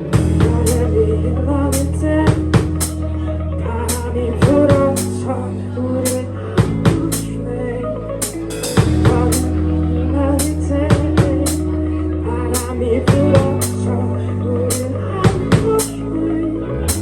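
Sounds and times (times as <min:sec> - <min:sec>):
live band playing: 0:00.0 - 0:00.9, 0:01.7 - 0:03.0, 0:03.9 - 0:05.2, 0:06.0 - 0:07.4, 0:08.2 - 0:09.6, 0:10.4 - 0:11.8, 0:12.5 - 0:13.9, 0:14.7 - 0:16.0
sustained bass notes: 0:00.0 - 0:17.0.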